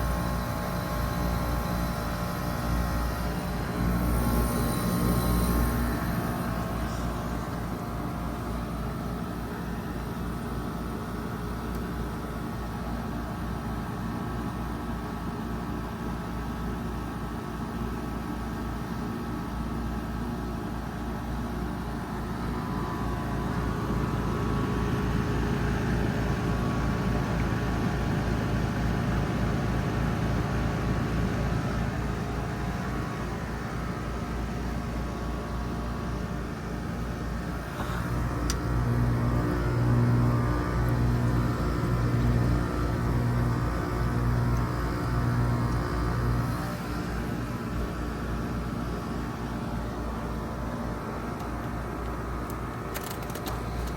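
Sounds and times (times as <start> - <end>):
heat pump compressor hum: 0.0 - 53.9.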